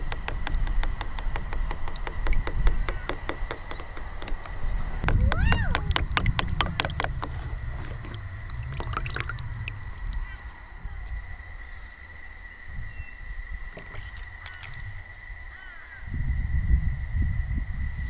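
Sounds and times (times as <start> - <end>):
sharp clicks and knocks: 0.0 - 10.2
crows cawing: 2.8 - 3.3, 15.5 - 16.1
low rumble: 4.6 - 12.5.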